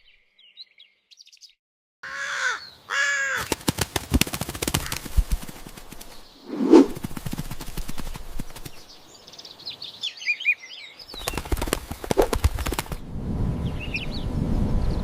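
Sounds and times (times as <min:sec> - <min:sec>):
rapid clattering clicks: 0:03.4 - 0:06.2, 0:11.2 - 0:13.0.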